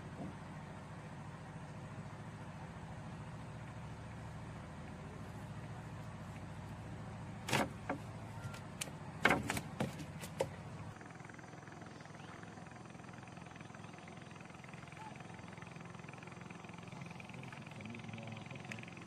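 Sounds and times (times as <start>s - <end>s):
low motor hum: 0.0s - 19.0s
sharp knocks and clicks: 7.5s - 8.1s, 8.8s - 10.6s.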